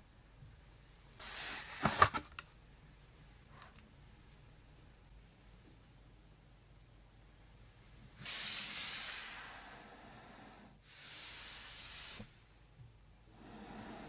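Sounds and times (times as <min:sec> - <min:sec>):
hissing spray: 0:08.2 - 0:09.7, 0:10.9 - 0:12.4.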